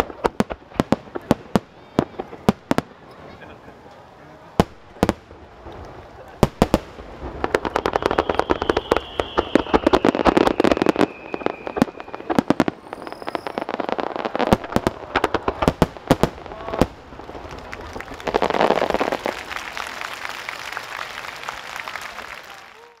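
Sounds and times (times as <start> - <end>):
fireworks bangs and crackles: 0.0 - 3.4, 4.5 - 22.6
falling firework whistle: 7.5 - 13.9.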